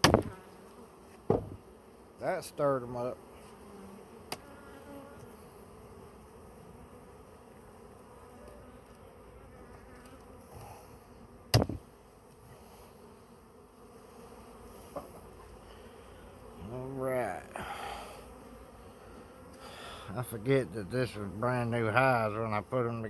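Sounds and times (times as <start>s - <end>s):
sharp knock: 0.0s - 0.4s, 1.3s - 1.6s, 11.6s - 11.8s
honeybees buzzing: 0.0s - 23.0s.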